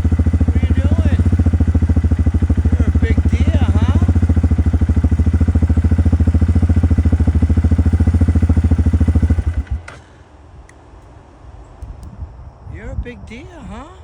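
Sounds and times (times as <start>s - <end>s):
engine idling: 0.0s - 10.6s.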